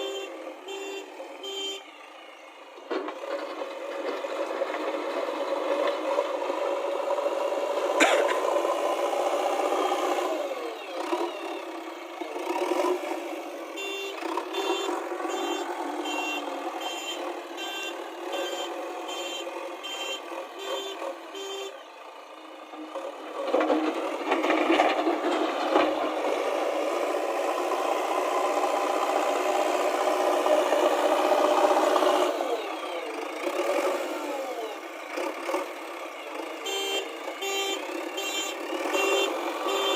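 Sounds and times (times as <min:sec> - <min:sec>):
diesel engine running: 0:00.0 - 0:39.9
reversing alarm beeping: 0:13.8 - 0:21.8.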